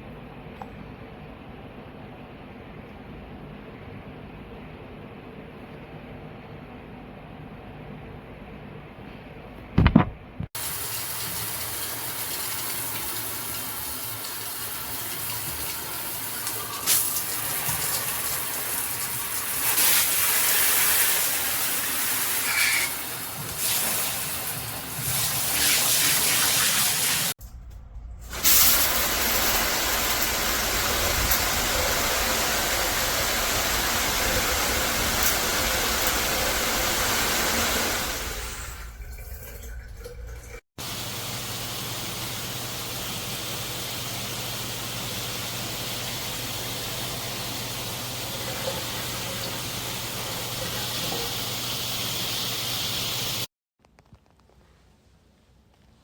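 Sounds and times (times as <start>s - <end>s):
shower water spraying: 10.6s - 27.4s, 28.3s - 39.0s, 40.8s - 53.5s.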